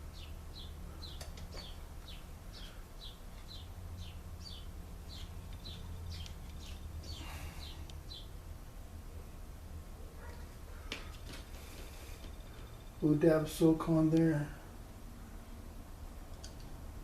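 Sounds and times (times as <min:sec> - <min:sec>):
bird chirping: 0:00.0 - 0:08.4
low steady hum: 0:00.0 - 0:17.0.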